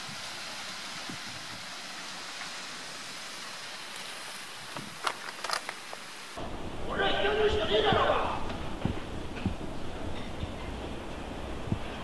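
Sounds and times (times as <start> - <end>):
steady rushing noise: 3.0 - 12.0.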